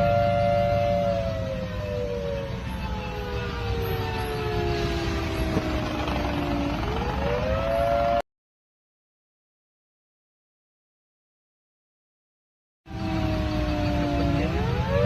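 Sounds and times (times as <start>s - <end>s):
two-tone warning siren: 0.0s - 8.2s, 12.9s - 15.0s
steady low rumble: 4.8s - 7.7s.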